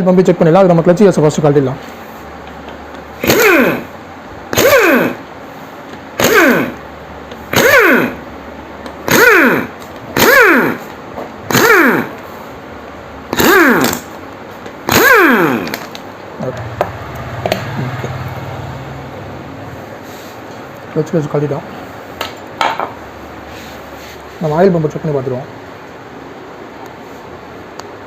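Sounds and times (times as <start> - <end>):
impact wrench bursts: 3.2 - 5.3, 6.1 - 8.3, 9.0 - 12.4, 13.3 - 14.2, 14.8 - 18.1.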